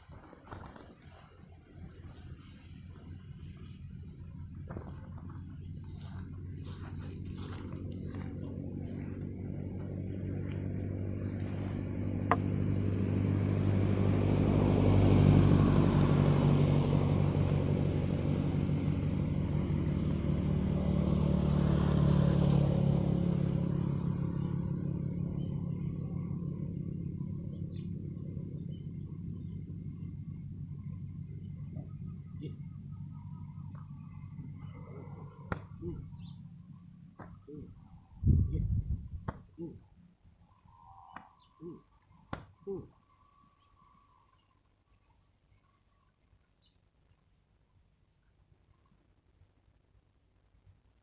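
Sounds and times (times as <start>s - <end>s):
vehicle engine passing: 0.0s - 40.0s.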